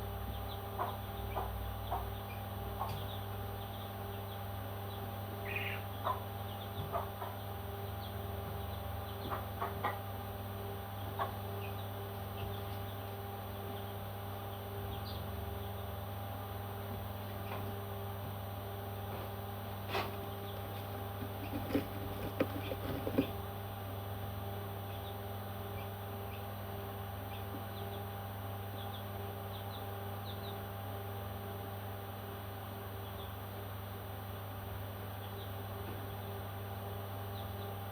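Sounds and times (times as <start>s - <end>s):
parrot chicks peeping: 0.0s - 31.7s, 32.4s - 37.9s
knocks and rustling: 19.1s - 23.4s.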